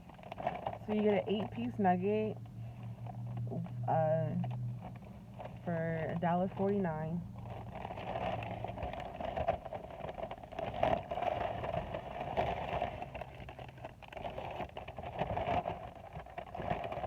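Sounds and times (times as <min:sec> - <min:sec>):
car interior background noise: 0:00.1 - 0:12.5.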